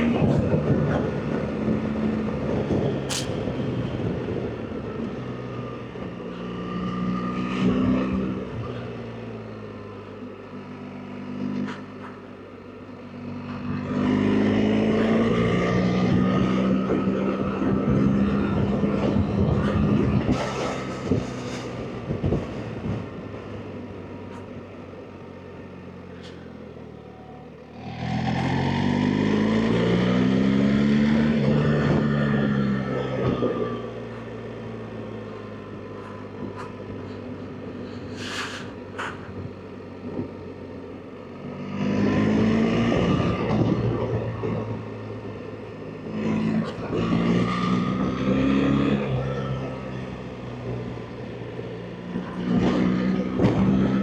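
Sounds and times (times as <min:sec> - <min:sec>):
motorcycle engine revving: 0:13.1 - 0:23.1, 0:27.7 - 0:40.3, 0:41.3 - 0:54.0.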